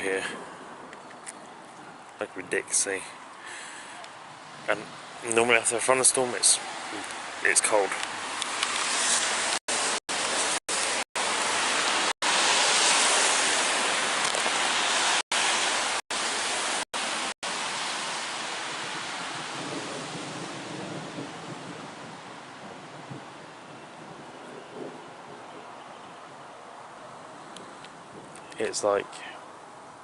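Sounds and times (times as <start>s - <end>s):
rolling thunder rumble: 18.5s - 25.8s.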